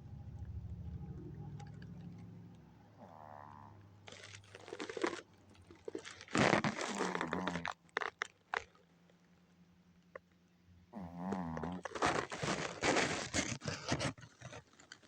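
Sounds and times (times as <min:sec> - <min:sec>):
pet snoring: 0:03.0 - 0:04.2, 0:10.9 - 0:13.4.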